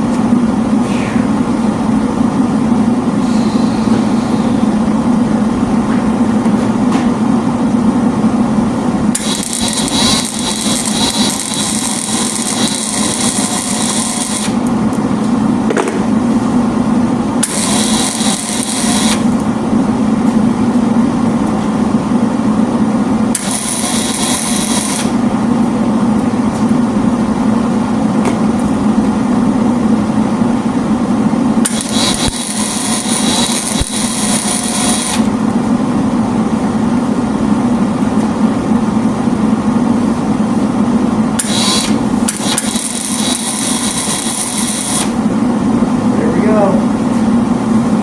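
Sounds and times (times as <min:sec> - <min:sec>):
welding arc crackling: 0:09.1 - 0:15.1, 0:17.4 - 0:19.6, 0:23.3 - 0:25.3, 0:31.6 - 0:35.6, 0:41.4 - 0:45.3.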